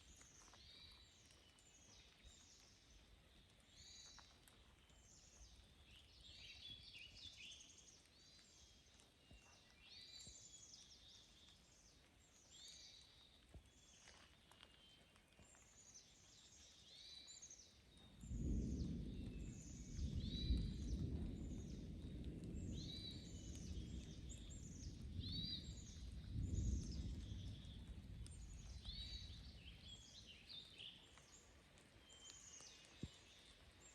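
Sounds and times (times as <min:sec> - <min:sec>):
rolling thunder: 0:18.2 - 0:30.0.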